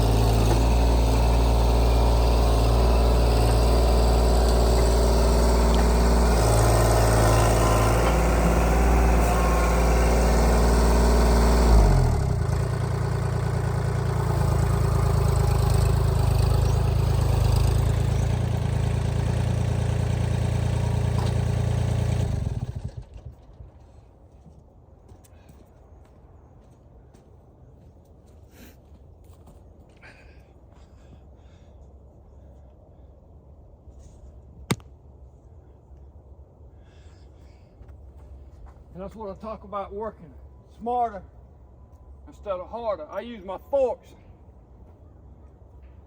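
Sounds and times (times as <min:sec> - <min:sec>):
engine running: 0:00.0 - 0:24.2.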